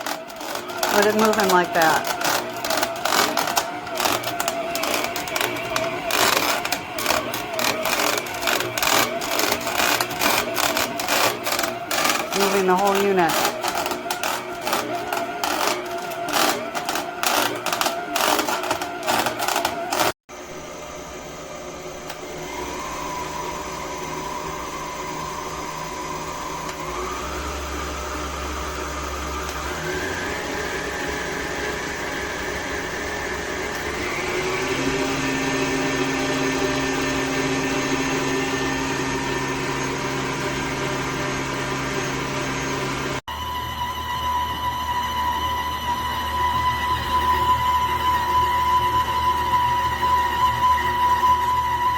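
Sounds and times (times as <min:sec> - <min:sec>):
stand mixer motor whining: 0:00.0 - 0:51.9.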